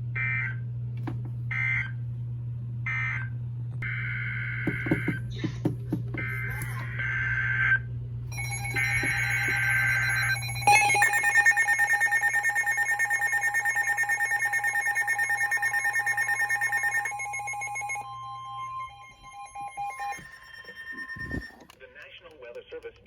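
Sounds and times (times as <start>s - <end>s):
alarm beeping rapidly: 8.3s - 21.7s
steady warning alarm tone: 8.3s - 21.7s
screechy digital data burst: 10.0s - 18.0s.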